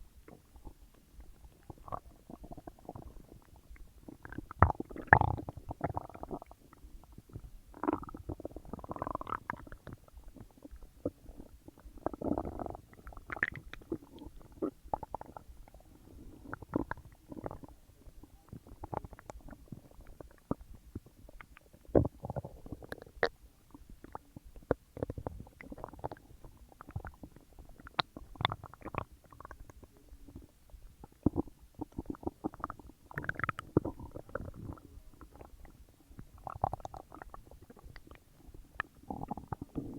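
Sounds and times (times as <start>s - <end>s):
stomach gurgling and rumbling: 0.0s - 39.9s.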